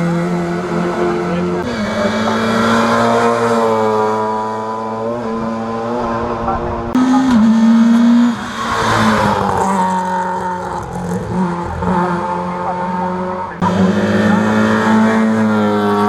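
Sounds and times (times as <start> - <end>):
rally car engine working hard: 0.0 - 16.0.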